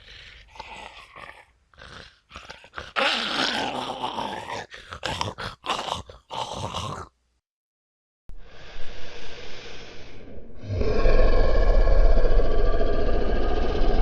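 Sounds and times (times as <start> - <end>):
raspy zombie voice: 0.0 - 7.2.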